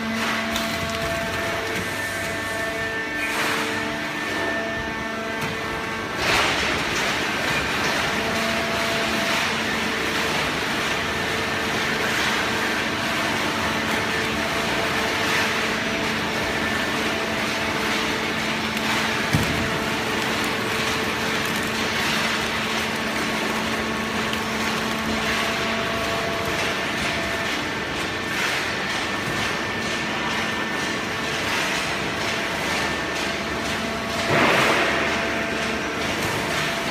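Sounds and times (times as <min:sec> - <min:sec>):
hydraulic baler machine hum: 0:00.0 - 0:36.9.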